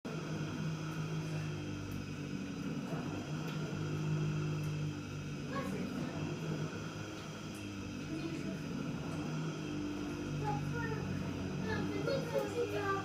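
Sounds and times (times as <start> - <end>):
dishwasher grinding hum: 0.0 - 13.0.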